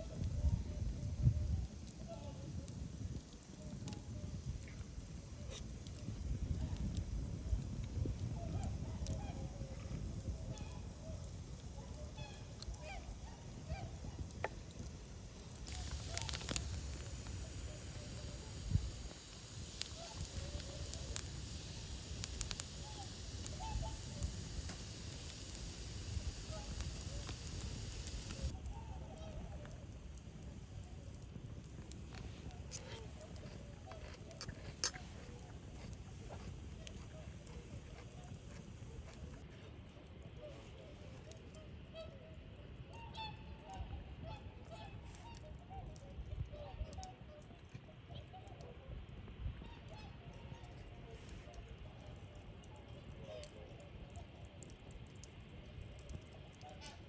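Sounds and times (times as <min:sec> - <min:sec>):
wood fire crackling and popping: 0:00.0 - 0:40.3, 0:51.5 - 0:57.0
faint distant calls: 0:08.2 - 0:31.4
swans honking: 0:10.4 - 0:29.5.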